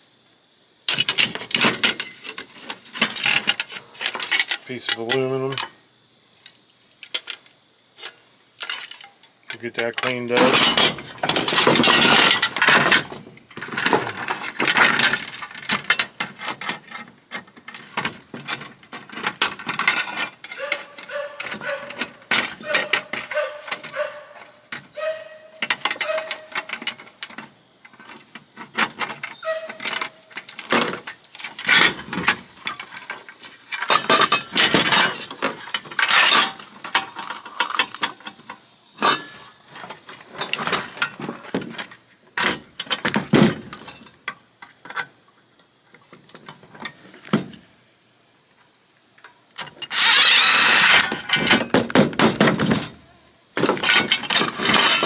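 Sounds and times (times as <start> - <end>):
metal parts and tools clattering: 0.9 - 5.7, 8.0 - 16.8, 18.0 - 38.1, 49.6 - 52.9, 53.6 - 55.0
steady rasping noise: 49.6 - 51.3.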